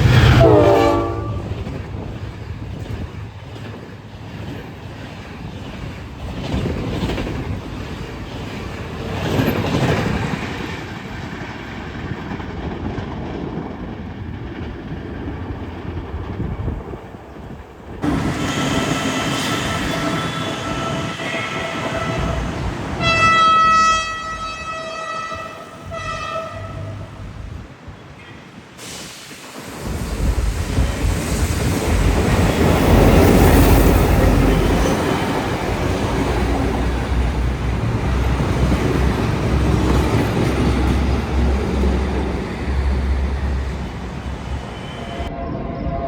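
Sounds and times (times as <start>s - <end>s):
train horn: 0.0s - 1.8s, 18.0s - 27.4s
train rumbling on rails: 0.0s - 46.0s.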